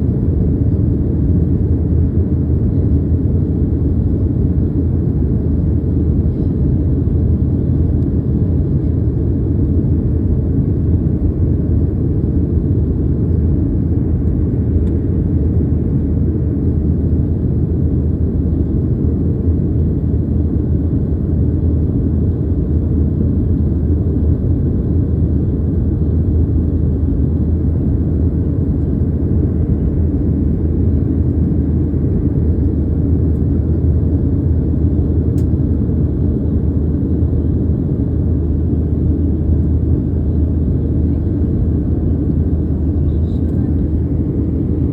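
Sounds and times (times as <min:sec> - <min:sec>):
loud low rumble: 0:39.7 - 0:44.9.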